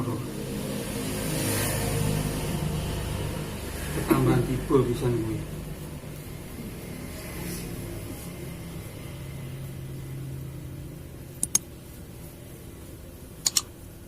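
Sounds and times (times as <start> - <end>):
quick double click: 13.4 - 13.7.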